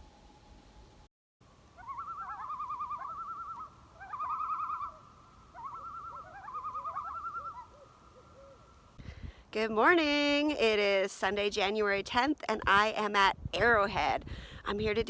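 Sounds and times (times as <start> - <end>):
whistled bird-like trills: 1.8 - 8.7.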